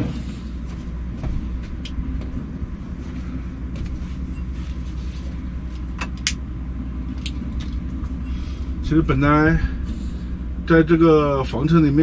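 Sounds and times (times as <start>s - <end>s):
air conditioner humming: 0.0s - 12.0s.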